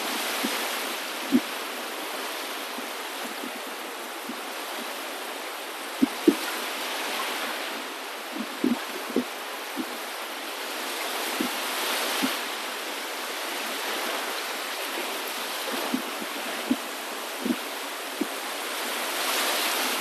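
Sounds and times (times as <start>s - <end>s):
water rushing: 0.0s - 20.0s.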